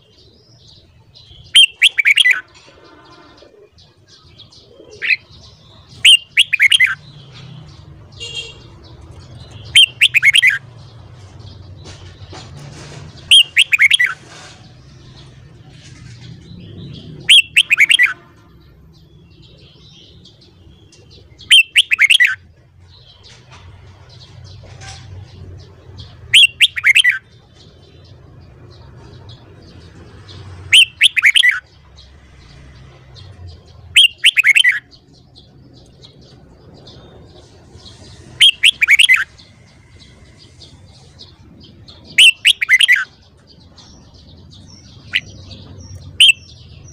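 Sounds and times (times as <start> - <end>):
bulbul singing falling notes: 5.9 - 10.9, 13.1 - 14.2.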